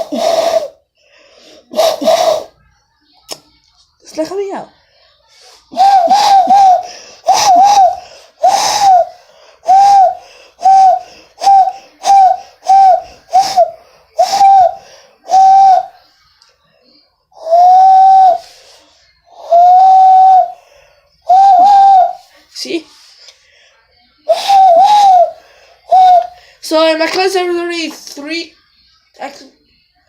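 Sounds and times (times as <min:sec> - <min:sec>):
hand whistle hooting notes: 0:05.8 - 0:09.1, 0:09.7 - 0:15.9, 0:17.4 - 0:18.4, 0:19.4 - 0:20.6, 0:21.3 - 0:22.2, 0:24.3 - 0:26.3.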